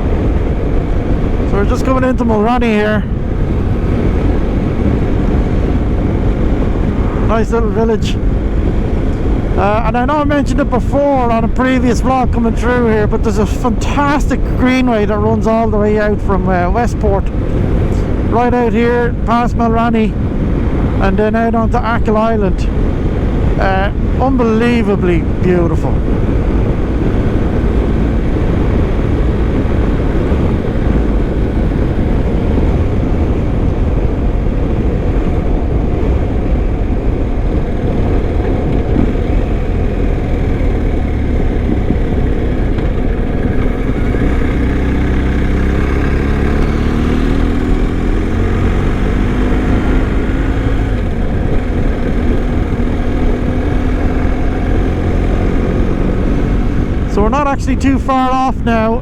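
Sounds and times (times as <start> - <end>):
motorcycle engine: 0.0 - 58.3
wind and road noise: 0.0 - 59.0.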